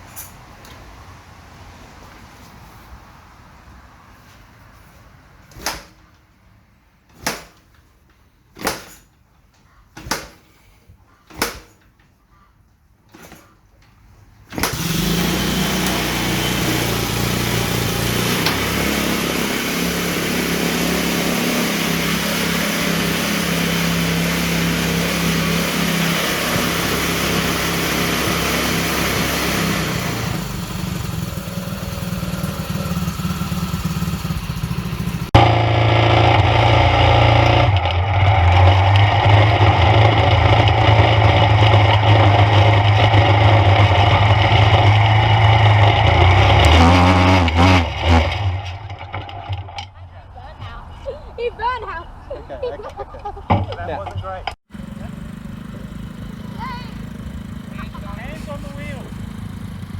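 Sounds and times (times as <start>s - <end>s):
sharp knocks: 5.5s - 6.1s, 7.1s - 7.8s, 8.5s - 9.1s, 9.9s - 10.6s, 11.2s - 12.0s
small kart engine running: 14.5s - 50.1s, 52.9s - 59.9s.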